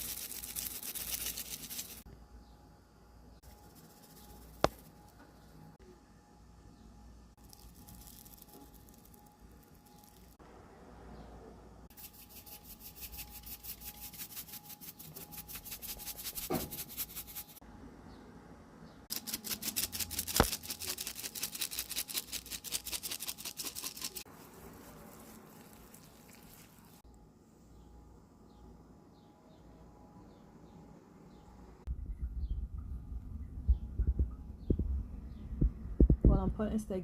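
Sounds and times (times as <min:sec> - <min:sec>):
seasoning shaker rattling: 0:00.0 - 0:02.0, 0:03.5 - 0:05.1, 0:07.4 - 0:10.4, 0:11.9 - 0:17.6, 0:19.1 - 0:27.0.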